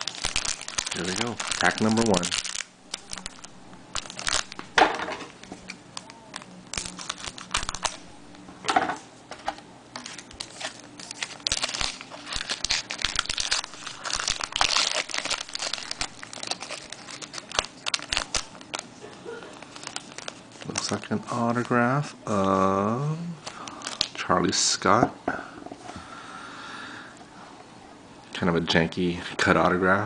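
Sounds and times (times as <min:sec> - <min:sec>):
wrapper crinkling and tearing: 0:00.0 - 0:08.4, 0:10.0 - 0:21.8, 0:23.4 - 0:24.2.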